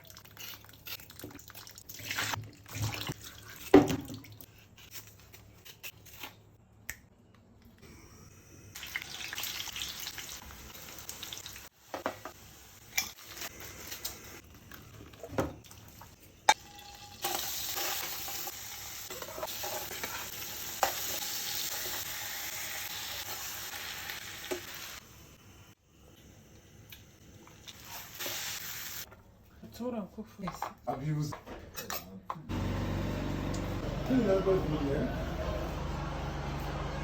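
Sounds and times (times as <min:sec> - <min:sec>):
food sizzling in a pan: 0:08.7 - 0:14.4, 0:16.5 - 0:29.1
utensil stirring in a pan: 0:16.8 - 0:22.7.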